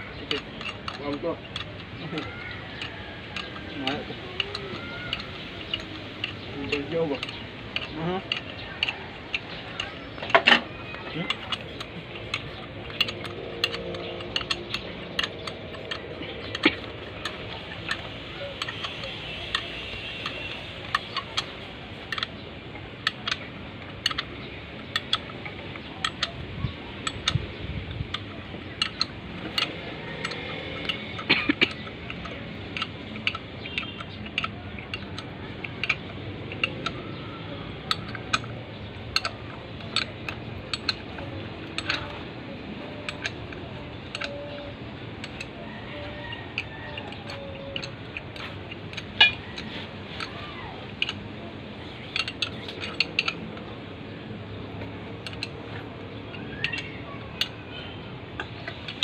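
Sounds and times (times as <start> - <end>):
low background hum: 0.0 - 59.0
metal tools clinking: 43.0 - 54.4.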